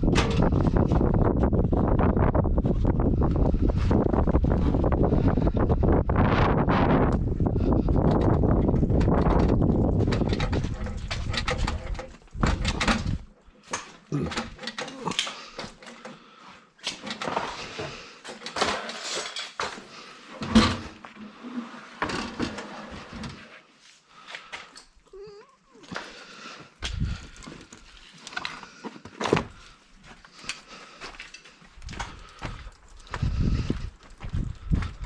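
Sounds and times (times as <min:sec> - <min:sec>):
knocks and clatters of objects: 0:00.0 - 0:01.6, 0:07.7 - 0:21.4, 0:25.9 - 0:35.0.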